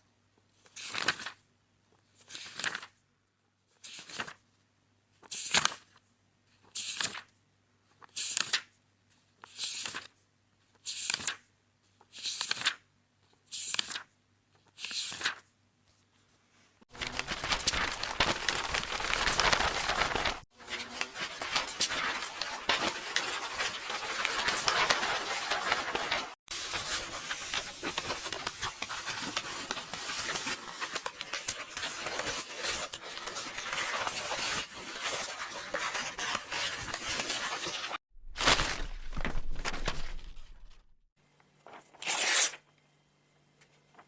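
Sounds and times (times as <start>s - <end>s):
paper pages rustling and tearing: 0.6s - 1.4s, 16.9s - 40.9s, 41.6s - 42.6s.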